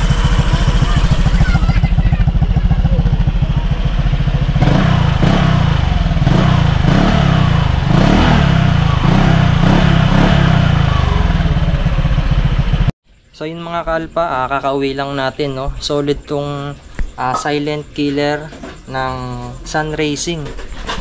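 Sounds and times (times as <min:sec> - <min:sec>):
scooter engine idling: 0:00.0 - 0:12.9
scooter engine revving: 0:00.0 - 0:12.9.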